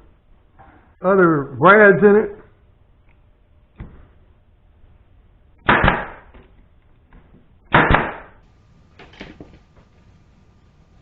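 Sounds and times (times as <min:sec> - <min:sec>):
nail gun firing: 0:05.6 - 0:06.3, 0:07.7 - 0:08.4.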